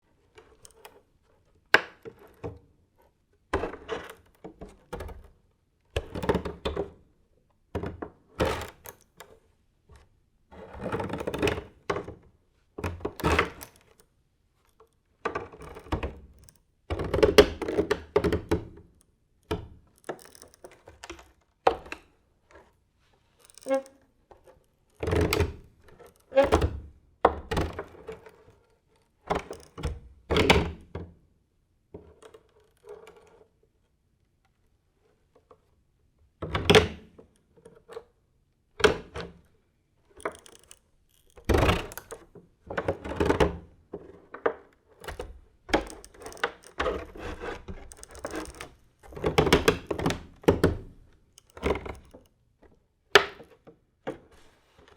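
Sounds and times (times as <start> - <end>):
wooden floorboards creaking: 23.6 - 24.0, 45.1 - 52.2.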